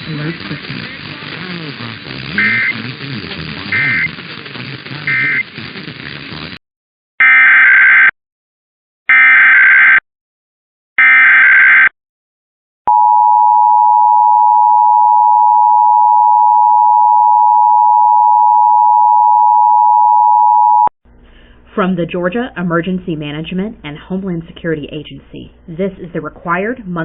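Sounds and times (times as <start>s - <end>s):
warbling data bursts: 0.0s - 4.2s, 5.0s - 5.4s
steady two-tone attention signal: 2.4s - 2.8s, 3.7s - 4.1s, 5.1s - 5.4s, 12.9s - 20.9s.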